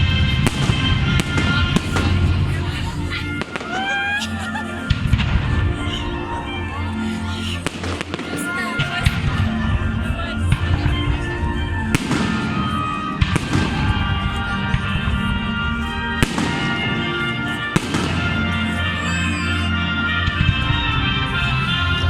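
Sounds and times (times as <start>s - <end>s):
fireworks bangs: 0.0s - 3.7s, 11.9s - 18.6s
fireworks crackling: 0.0s - 3.8s, 7.6s - 9.9s, 10.5s - 19.6s
music playing: 0.0s - 22.0s.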